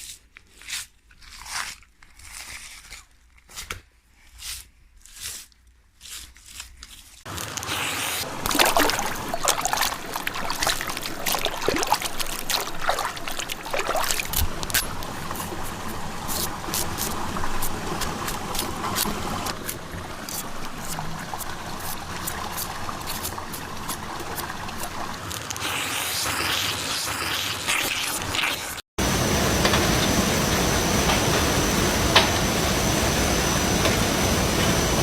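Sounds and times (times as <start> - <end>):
water trickling and sloshing: 8.2 - 25.6.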